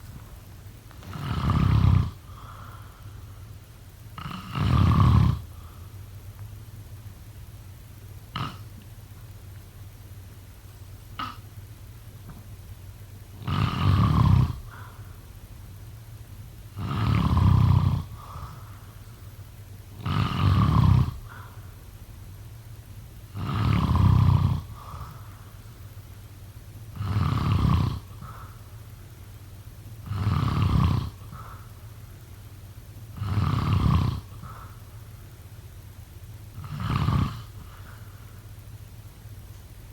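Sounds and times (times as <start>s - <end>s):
person snoring: 0.9s - 3.4s, 4.2s - 5.9s, 8.3s - 8.8s, 11.2s - 11.4s, 13.4s - 15.1s, 16.8s - 19.0s, 20.0s - 21.7s, 23.3s - 25.7s, 26.9s - 28.8s, 30.0s - 31.9s, 33.2s - 35.2s, 36.6s - 38.4s.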